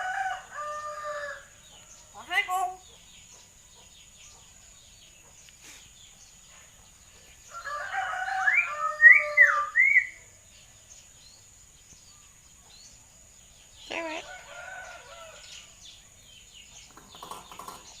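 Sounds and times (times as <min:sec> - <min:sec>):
myna bird whistling: 0:08.4 - 0:10.2.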